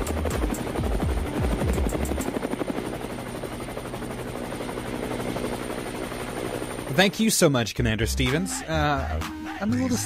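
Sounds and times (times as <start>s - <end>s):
helicopter rotor chopping: 0.0s - 7.6s.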